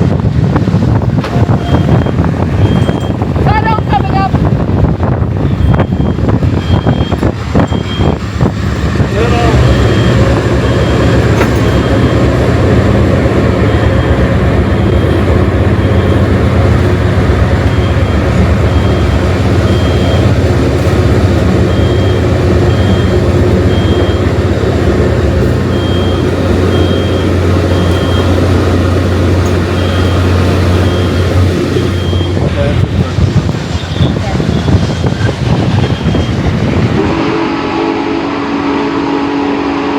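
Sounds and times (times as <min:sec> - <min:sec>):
train rumbling over rails: 0:00.0 - 0:39.9
smoke detector beeping: 0:01.5 - 0:04.2, 0:05.5 - 0:08.2, 0:17.7 - 0:20.4, 0:21.6 - 0:24.4, 0:25.7 - 0:28.4, 0:29.8 - 0:32.5.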